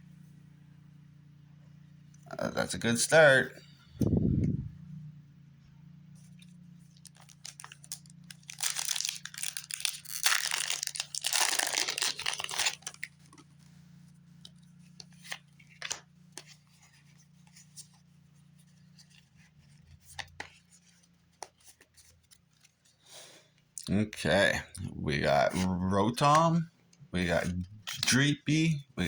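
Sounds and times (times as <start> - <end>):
cards clicking and rustling: 6.9 - 13.6, 14.4 - 18.0, 27.2 - 28.4
foil wrapper tearing and crinkling: 7.0 - 13.4.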